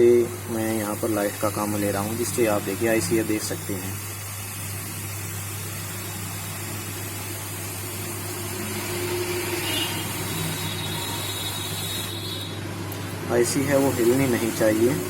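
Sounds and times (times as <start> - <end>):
hot air blower hissing: 0.0 - 15.0.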